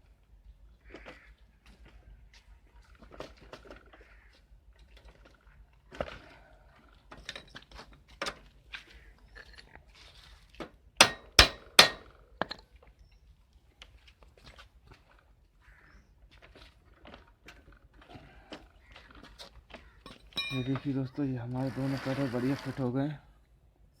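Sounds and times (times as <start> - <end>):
metal tool knocking on pedal: 11.0 - 12.1, 20.1 - 20.9
sharp metallic strikes: 11.0 - 12.1.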